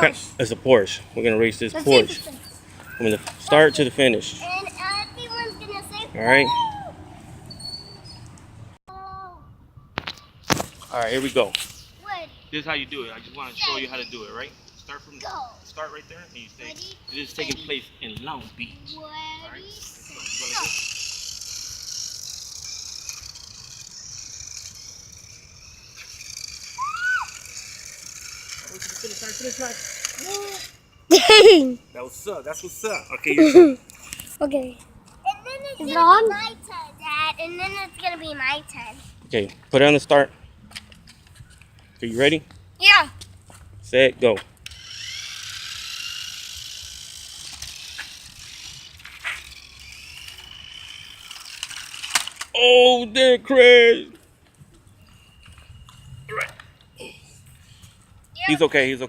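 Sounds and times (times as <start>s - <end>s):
wheels rattling on pavement: 0.1s - 8.8s, 19.6s - 30.9s, 42.4s - 52.6s
toy car electric motor whining: 4.4s - 6.5s, 19.6s - 34.2s, 44.6s - 52.6s.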